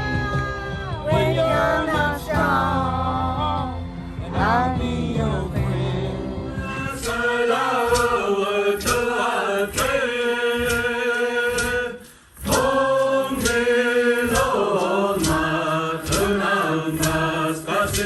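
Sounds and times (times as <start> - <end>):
voices singing held chords: 0.0 - 18.0
sharp beat: 4.4 - 18.0.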